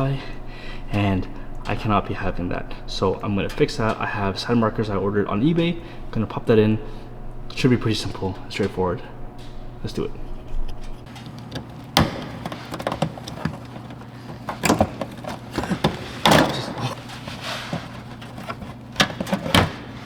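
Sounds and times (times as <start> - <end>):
plastic clicks and knocks: 11.1 - 16.8.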